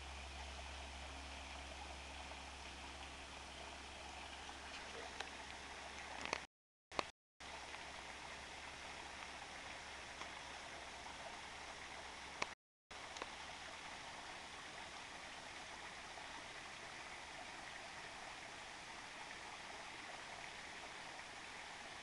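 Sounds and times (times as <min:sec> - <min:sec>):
stream flowing: 0:00.0 - 0:22.0
click: 0:06.2 - 0:07.1.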